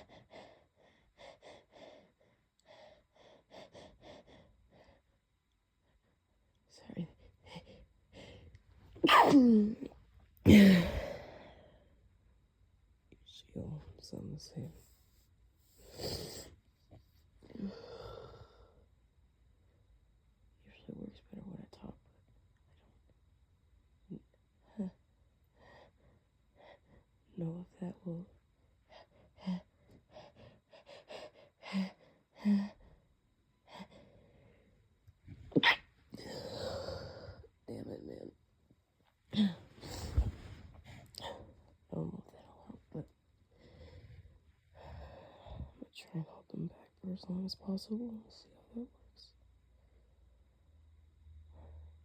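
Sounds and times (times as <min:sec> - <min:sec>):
person sneezing: 0:09.0 - 0:09.9, 0:10.5 - 0:11.1
stifled sneeze: 0:09.0 - 0:09.9, 0:35.5 - 0:35.9.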